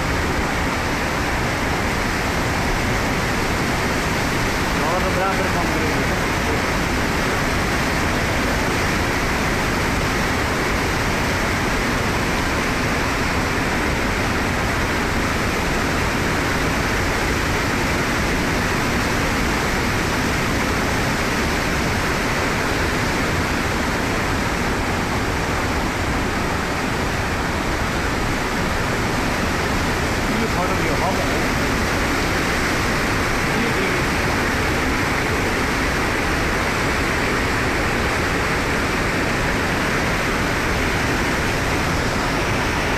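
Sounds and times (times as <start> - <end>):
floodwater rushing: 0.0 - 42.9.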